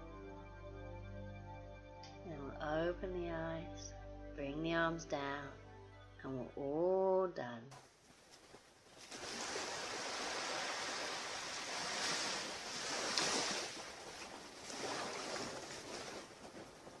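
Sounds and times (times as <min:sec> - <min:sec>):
ocean surf washing onto beach: 0:09.0 - 0:17.0.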